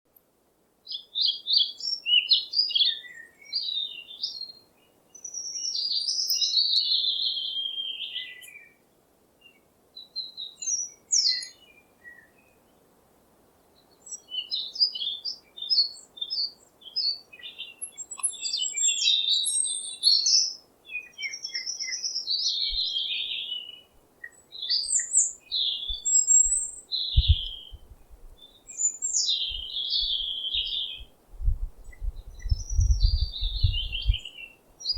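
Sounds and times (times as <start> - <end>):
songbirds chirping and singing: 13.9 - 34.9
faint low thumps: 27.2 - 28.4, 31.0 - 34.2.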